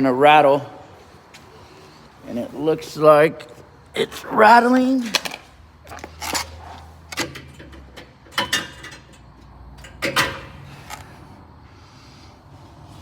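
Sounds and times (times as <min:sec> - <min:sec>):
loose car part rattling: 0:05.1 - 0:11.1.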